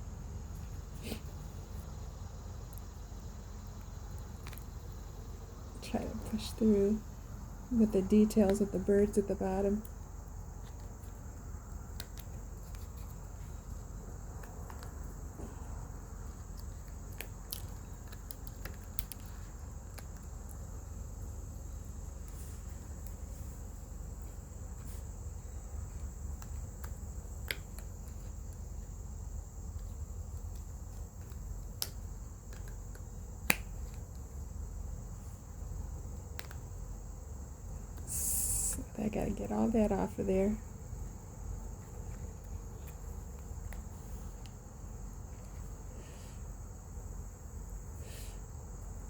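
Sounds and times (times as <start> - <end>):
steady low hum: 0.0 - 49.0
faint high whine: 37.4 - 49.0.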